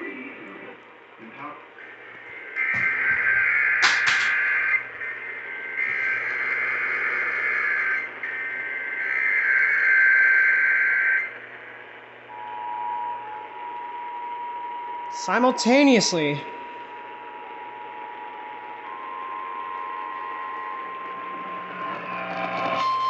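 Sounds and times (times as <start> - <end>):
low radio hum: 0.0 - 23.0
buzzing digital data bursts: 2.4 - 11.4, 18.2 - 23.0.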